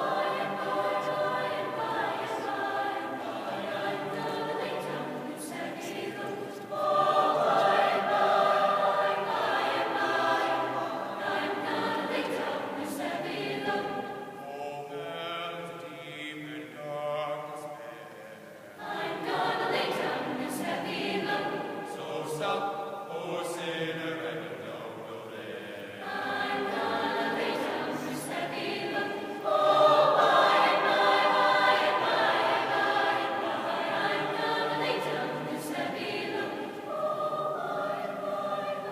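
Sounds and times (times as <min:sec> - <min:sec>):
choir singing chords: 0:00.0 - 0:38.9.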